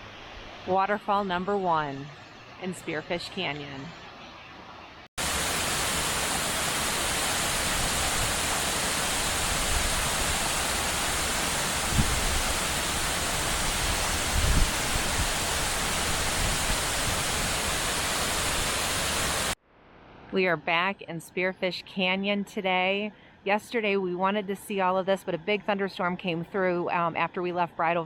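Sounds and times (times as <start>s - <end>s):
waterfall rushing: 5.2s - 19.6s.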